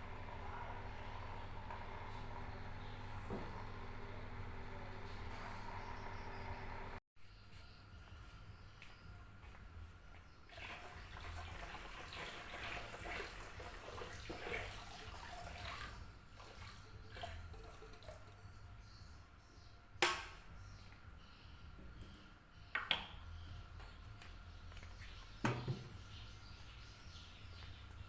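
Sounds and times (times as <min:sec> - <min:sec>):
faint water sounds: 0:10.5 - 0:18.7.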